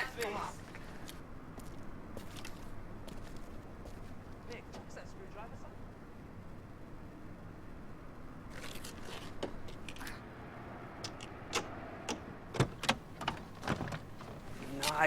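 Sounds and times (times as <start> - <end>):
sharp clicks and light knocks: 11.0 - 15.0
handling rustling and rattling: 12.6 - 15.0.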